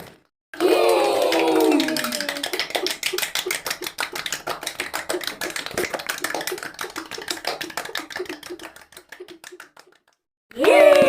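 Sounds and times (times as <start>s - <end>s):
group hand clapping: 0.0s - 11.0s.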